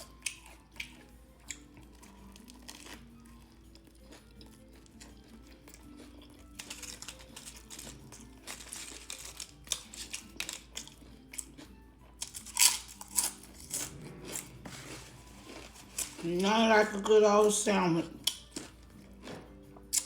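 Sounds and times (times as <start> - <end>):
soft background music: 0.0 - 20.0
sandwich wrapping crinkling: 1.9 - 3.0, 6.3 - 11.0, 14.7 - 16.7.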